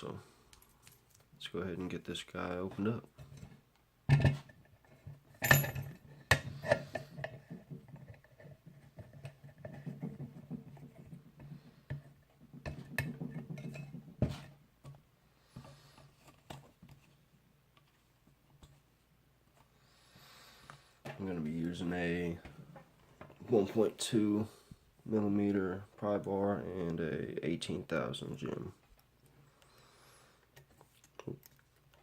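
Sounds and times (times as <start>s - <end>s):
padlock and metal tools clinking: 5.4s - 6.1s.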